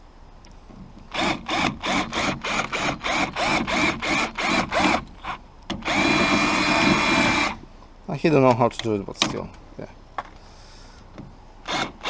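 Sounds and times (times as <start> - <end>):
electric drill drilling rivets: 1.1 - 7.6, 11.6 - 12.0.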